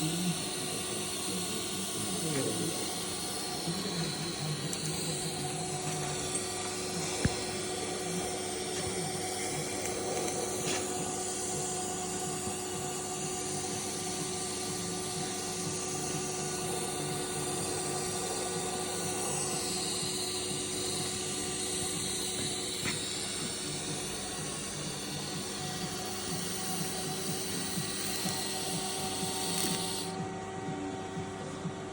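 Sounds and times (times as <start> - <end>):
welding arc hiss: 0.0 - 30.2.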